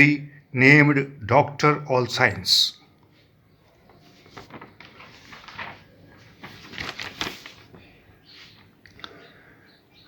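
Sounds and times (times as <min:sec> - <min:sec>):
faint clicks and rustles: 0:03.0 - 0:09.1.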